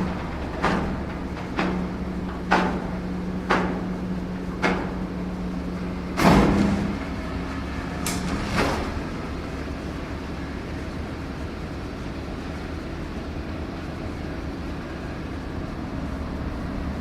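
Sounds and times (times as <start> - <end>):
sharp clattering knocks: 0.0 - 7.4
motor hum: 0.0 - 17.0.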